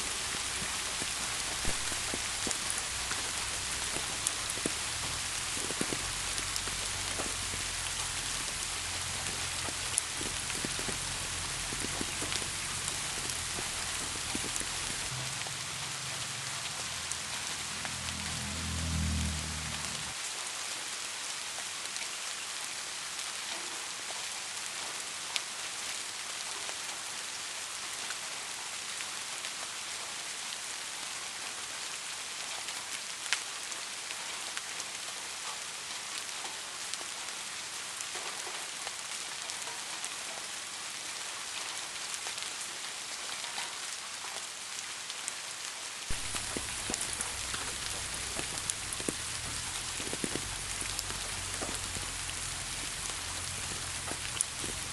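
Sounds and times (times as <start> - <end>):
rain hissing: 0.0 - 22.1, 46.0 - 54.9
low rumble: 1.6 - 20.2, 46.1 - 54.9.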